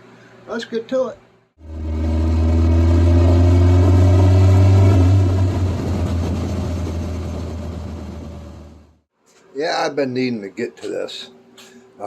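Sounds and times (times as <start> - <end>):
car engine humming: 1.6 - 8.9.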